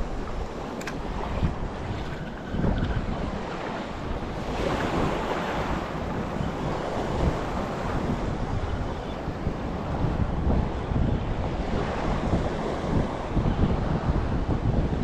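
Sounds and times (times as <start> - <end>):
surf on reef: 0.0 - 15.0
wind buffeting microphone: 0.0 - 15.0.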